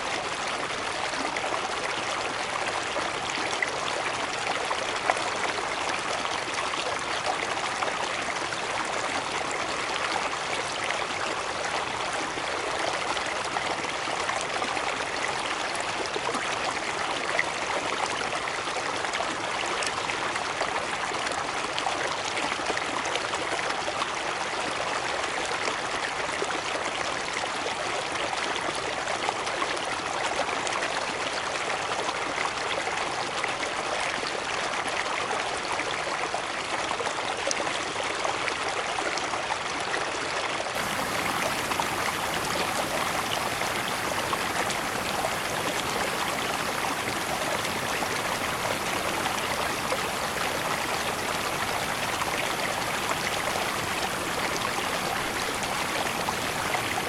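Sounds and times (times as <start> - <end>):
cascading water rushing: 40.8 - 57.0.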